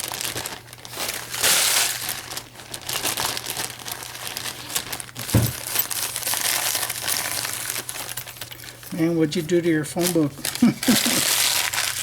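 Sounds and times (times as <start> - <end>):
paper crinkling: 0.0 - 12.0
dull thump: 5.2 - 5.8.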